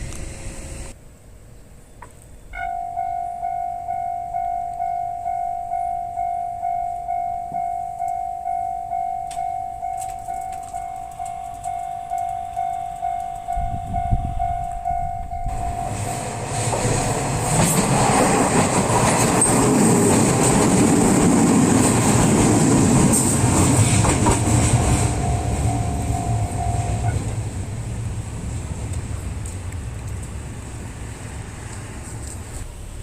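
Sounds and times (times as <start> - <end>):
level crossing warning bell: 2.5 - 16.5, 24.4 - 27.6
train wheels rumbling: 8.8 - 33.0.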